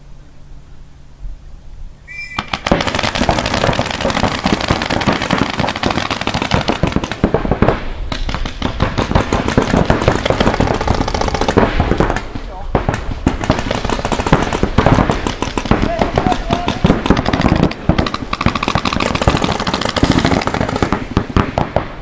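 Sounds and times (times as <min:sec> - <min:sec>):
brief high tone: 0:02.1 - 0:02.6
paintball markers firing: 0:02.4 - 0:07.4, 0:08.1 - 0:21.8.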